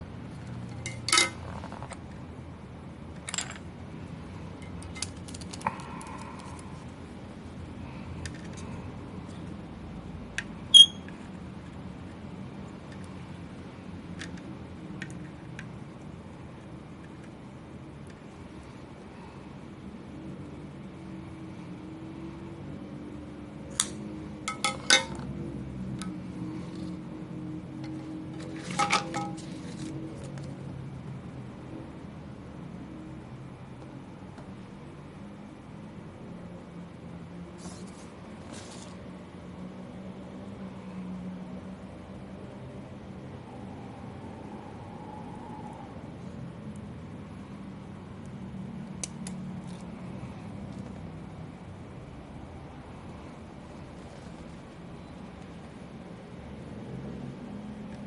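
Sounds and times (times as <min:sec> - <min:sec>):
steady low hum: 0:00.0 - 0:58.0
metal parts clinking on surface: 0:00.8 - 0:01.4, 0:28.4 - 0:29.9.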